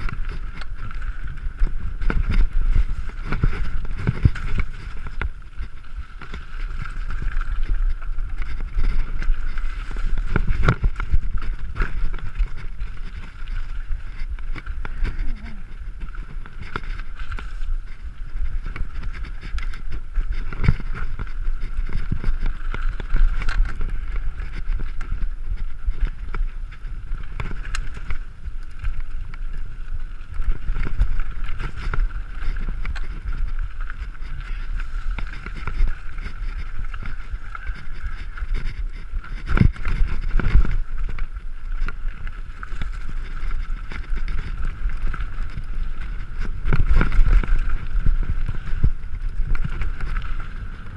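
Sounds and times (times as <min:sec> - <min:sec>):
bike rattles and knocks: 0:00.0 - 0:50.9
tyres rumbling on trail: 0:00.0 - 0:50.9
wind buffeting microphone: 0:00.0 - 0:50.9.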